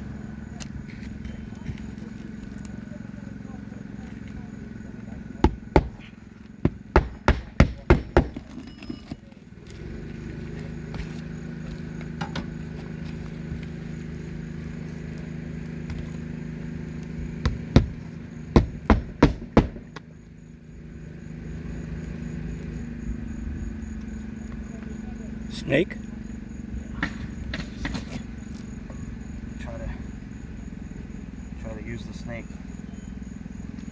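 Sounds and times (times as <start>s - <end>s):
steady low hum: 0.0s - 33.9s
hammer striking roofing nails: 5.4s - 8.9s, 17.4s - 20.1s.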